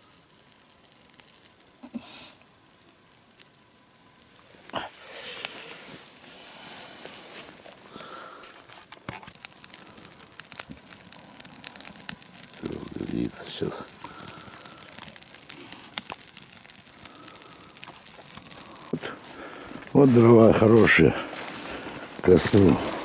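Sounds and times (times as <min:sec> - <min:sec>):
campfire crackling and popping: 0:00.0 - 0:23.0
light hiss: 0:00.0 - 0:23.0
twigs rustling: 0:00.0 - 0:23.0.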